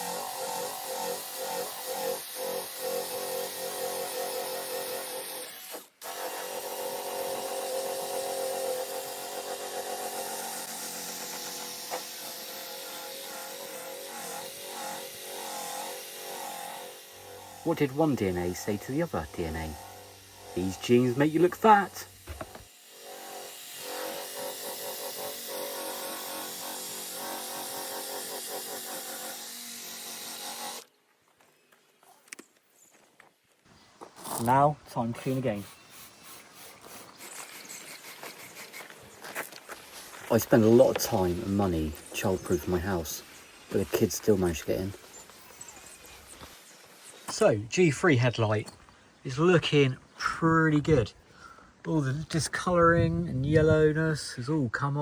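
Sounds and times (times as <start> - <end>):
electric drill polishing plastic: 0.0 - 30.9, 34.2 - 47.4
electric polisher buffing: 9.4 - 30.9.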